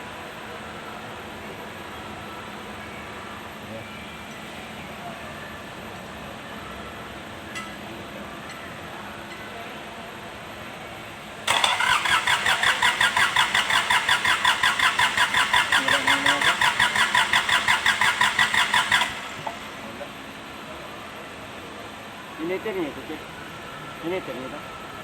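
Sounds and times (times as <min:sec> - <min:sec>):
diesel engine cranking on starter: 0:11.4 - 0:19.8.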